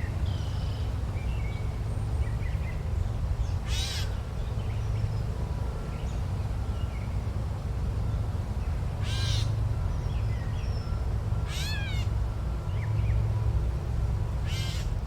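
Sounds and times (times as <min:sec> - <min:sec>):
large bird cawing: 0:03.7 - 0:04.1, 0:11.4 - 0:12.2, 0:14.4 - 0:15.0.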